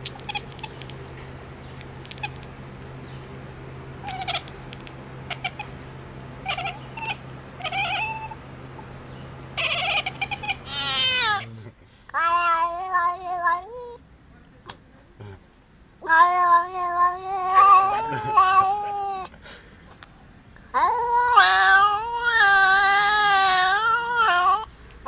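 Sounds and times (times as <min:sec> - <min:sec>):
cat meowing: 0:00.0 - 0:11.5
steady low hum: 0:00.0 - 0:11.7.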